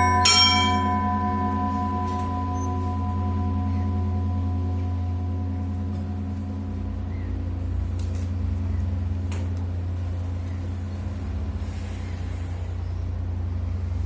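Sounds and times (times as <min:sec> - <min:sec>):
church bells: 0:00.0 - 0:07.7
engine rumbling: 0:00.0 - 0:14.0.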